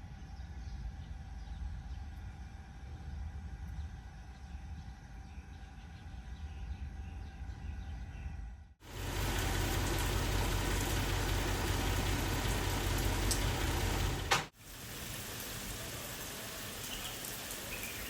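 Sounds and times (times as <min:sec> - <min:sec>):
low outdoor rumble: 0:00.0 - 0:17.5
heavy rain hissing: 0:08.8 - 0:18.0
bird chirps: 0:16.8 - 0:18.0.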